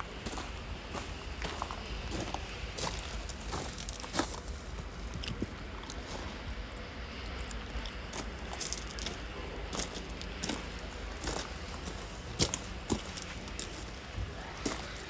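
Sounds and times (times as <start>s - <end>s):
footsteps crunching on rough ground: 0.0s - 6.4s, 7.6s - 15.0s
steady low rumble: 0.0s - 15.0s.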